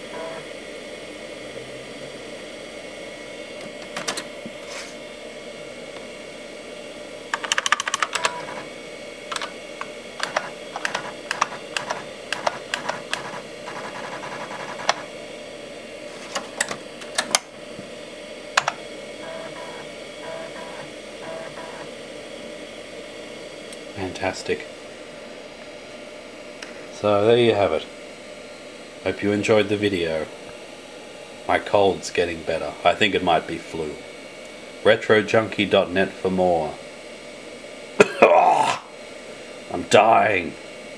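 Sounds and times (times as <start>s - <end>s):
computer humming: 0.0s - 40.9s
sharp clicks: 10.2s - 13.3s.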